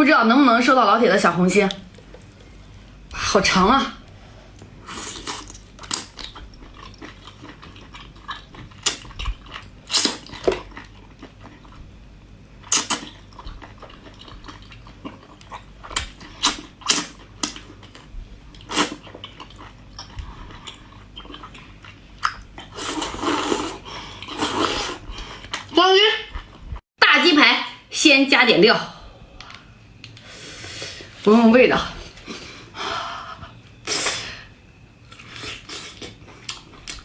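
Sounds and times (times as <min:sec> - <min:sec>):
wet chewing: 0:01.6 - 0:03.1, 0:04.6 - 0:12.0, 0:12.6 - 0:25.7
slurping: 0:22.6 - 0:25.6.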